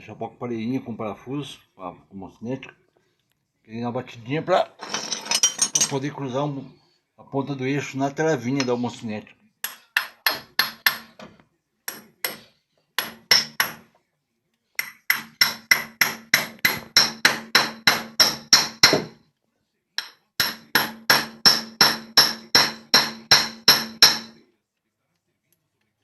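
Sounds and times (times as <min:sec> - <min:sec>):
hammer striking metal: 0:09.6 - 0:11.2, 0:11.9 - 0:13.9, 0:14.8 - 0:19.2, 0:20.0 - 0:24.4.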